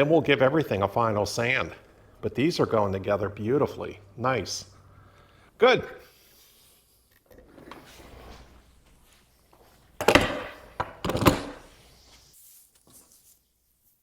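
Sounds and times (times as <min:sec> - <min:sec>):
handling and rubbing noise: 0:06.3 - 0:14.0.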